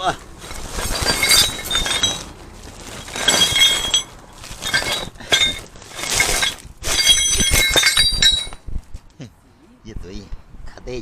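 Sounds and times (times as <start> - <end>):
metal fragments clinking and rattling: 0.4 - 8.6.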